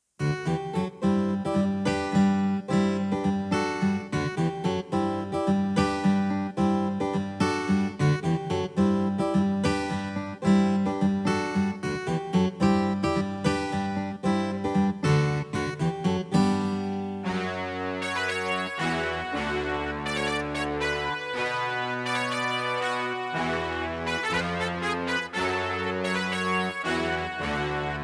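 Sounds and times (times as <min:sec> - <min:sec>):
keyboard strummed guitar chords: 0:00.2 - 0:28.0
bright keyboard voice: 0:16.8 - 0:28.0.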